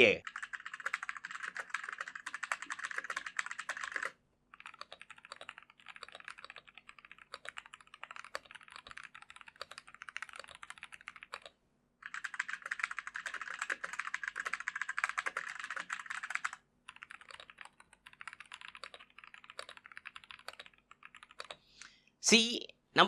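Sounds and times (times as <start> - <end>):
mechanical keyboard typing: 0.2 - 21.6.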